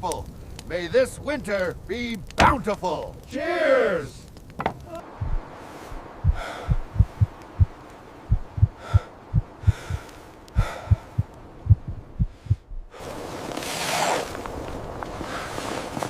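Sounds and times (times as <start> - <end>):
faint hissing: 0.0 - 16.0
deep dull thumps: 4.6 - 13.0.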